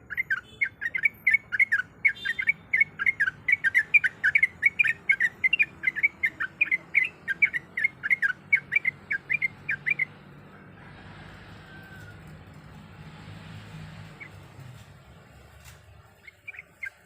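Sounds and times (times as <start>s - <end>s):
bird singing chattering whistles: 0.0s - 10.2s.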